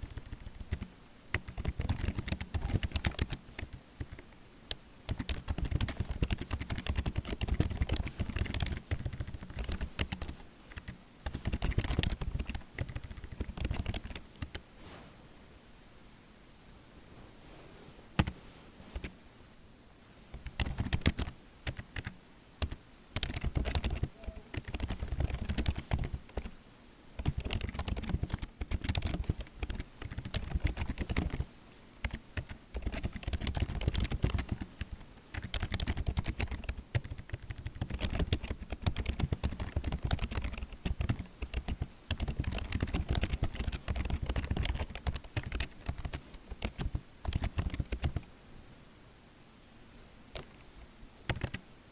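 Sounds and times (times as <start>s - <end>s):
keyboard typing clicks: 0.1s - 4.2s, 5.1s - 14.6s, 20.3s - 26.5s, 27.2s - 34.7s, 35.3s - 48.3s, 51.3s - 51.6s.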